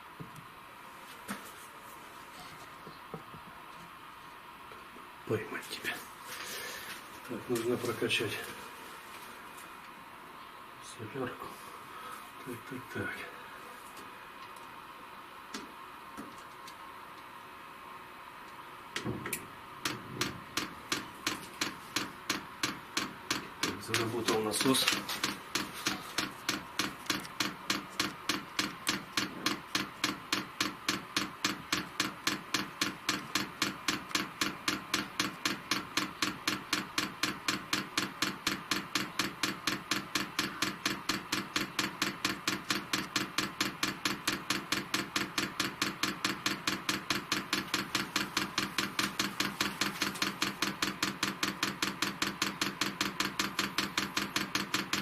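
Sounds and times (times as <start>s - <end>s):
fuel pump ticking: 20.6s - 55.0s.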